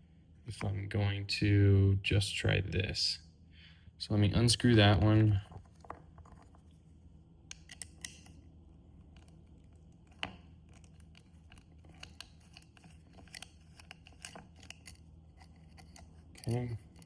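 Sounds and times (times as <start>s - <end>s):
plastic parts handled: 7.5s - 17.0s.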